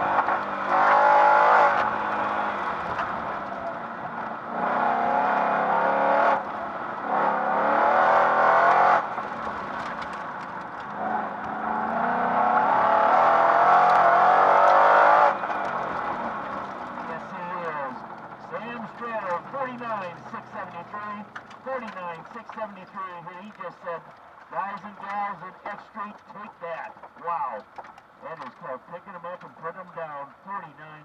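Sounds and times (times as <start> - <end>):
car engine revving hard: 0.0 - 9.9, 10.8 - 17.3.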